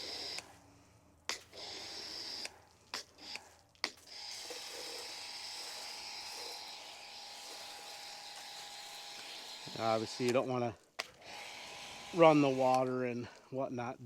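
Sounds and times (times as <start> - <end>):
foam cannon spraying hiss: 0.0 - 0.4, 1.3 - 10.4.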